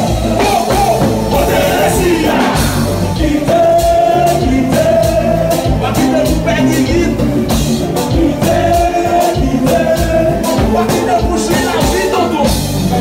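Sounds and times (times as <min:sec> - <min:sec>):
bass: 0:00.0 - 0:13.0
steady drum beat: 0:00.0 - 0:13.0
person singing: 0:00.4 - 0:07.2.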